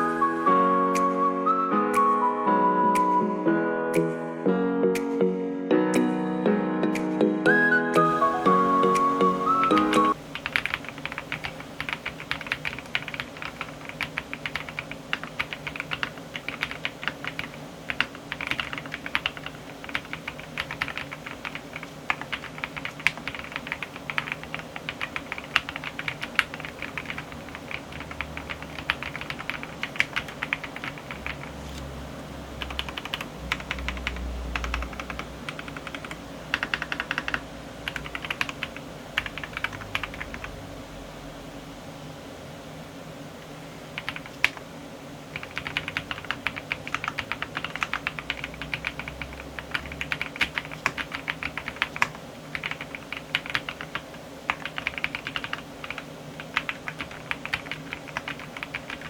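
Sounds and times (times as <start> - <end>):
fast typing on keyboard: 8.2 - 31.6, 32.6 - 40.6, 44.0 - 44.6, 45.3 - 59.0.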